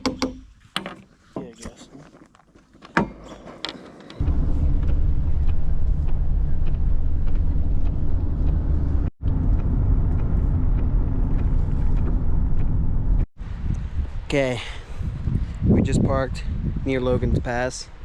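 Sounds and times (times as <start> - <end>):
car road and engine rumble: 4.2 - 13.6.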